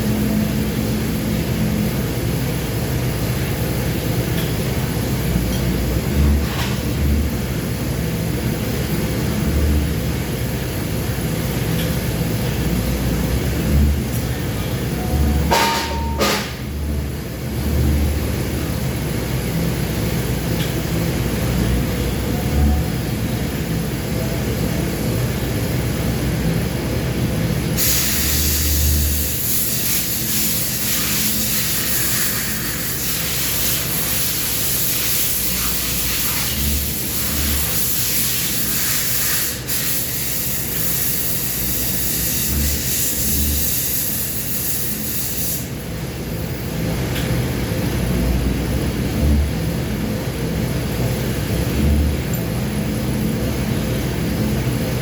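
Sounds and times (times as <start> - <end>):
steady mechanical rumble: 0.0 - 55.0
loud hiss: 27.8 - 45.7.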